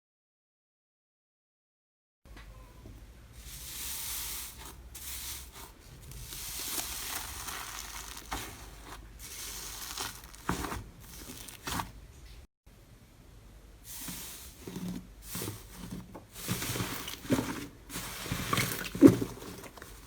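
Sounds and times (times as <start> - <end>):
slime squeezed by hand crackling: 6.5 - 8.6
slime popping: 6.6 - 8.6.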